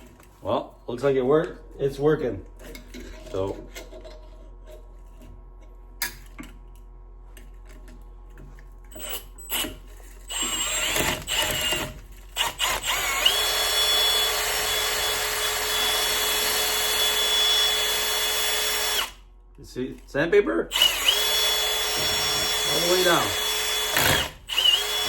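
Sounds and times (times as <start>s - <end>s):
power drill running: 8.9s - 19.2s, 20.7s - 25.0s.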